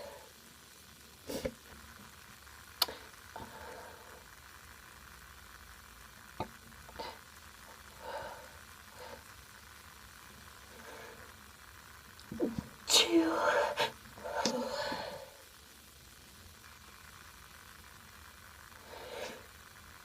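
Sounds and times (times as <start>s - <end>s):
steady low hiss: 0.0s - 20.0s
soft breaths: 2.8s - 4.5s, 6.9s - 9.6s, 10.5s - 11.5s, 12.4s - 15.6s, 18.7s - 19.7s.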